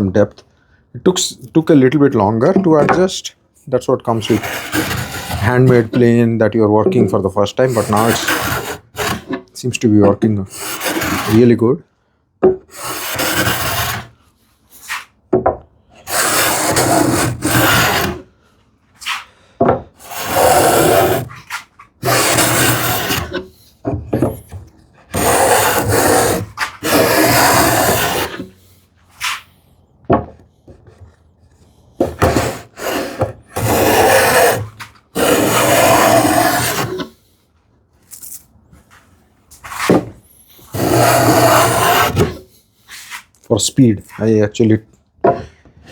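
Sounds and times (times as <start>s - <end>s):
wooden plane rasping on wood: 4.1s - 6.1s, 7.6s - 9.4s, 10.5s - 11.6s, 12.7s - 14.1s, 16.0s - 18.3s, 20.0s - 23.6s, 25.1s - 28.6s, 32.0s - 37.2s, 40.7s - 42.4s.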